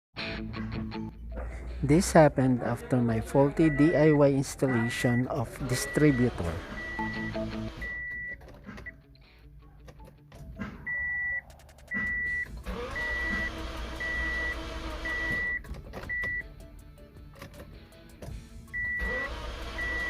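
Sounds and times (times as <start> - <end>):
car warning beeps: 3.6 - 8.4, 10.9 - 16.5, 18.8 - 20.0.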